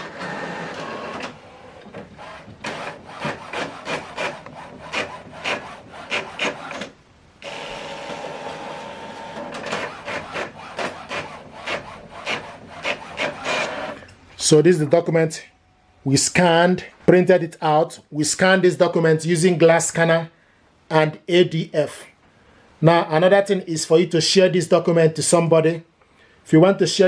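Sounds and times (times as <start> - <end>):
printer motors whirring: 0.0 - 14.0
print carriage scraping strokes: 0.0 - 14.1.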